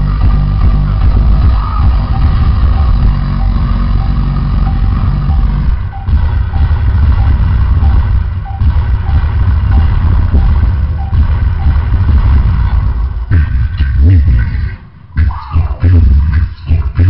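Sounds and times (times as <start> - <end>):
loud bass-heavy music: 0.0 - 17.0.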